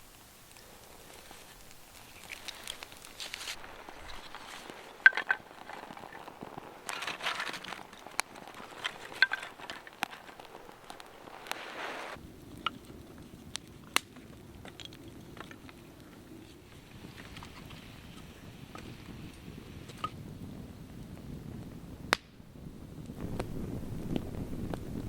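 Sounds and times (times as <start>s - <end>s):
campfire crackling: 0.0s - 25.0s
short scraping rushes: 11.1s - 12.2s.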